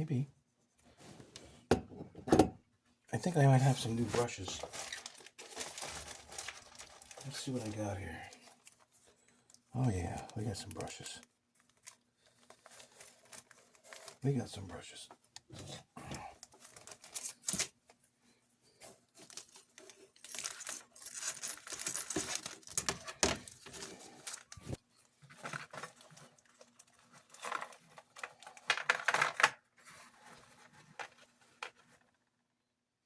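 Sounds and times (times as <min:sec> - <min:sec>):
packaging rustling and crinkling: 0:03.6 - 0:14.6, 0:16.4 - 0:18.0, 0:18.7 - 0:32.2.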